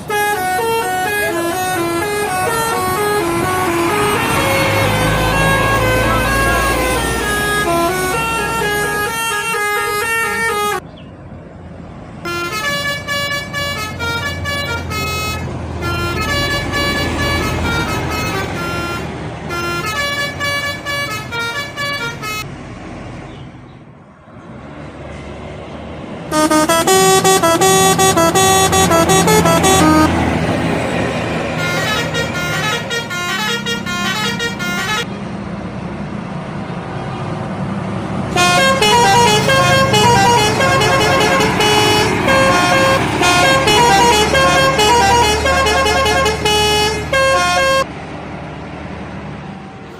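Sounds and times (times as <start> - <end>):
air horns playing melodic runs: 0.0 - 10.8, 12.3 - 22.4, 26.3 - 30.3, 31.5 - 35.1, 38.3 - 47.9
low engine rumble: 0.0 - 49.9.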